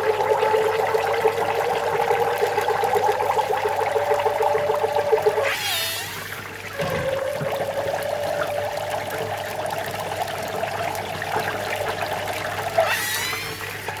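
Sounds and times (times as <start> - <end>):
steam whistling from casing: 4.0 - 10.0, 12.2 - 14.0
short rising squeals: 5.4 - 7.5, 12.6 - 14.0
sausages sizzling in oil: 12.8 - 13.6.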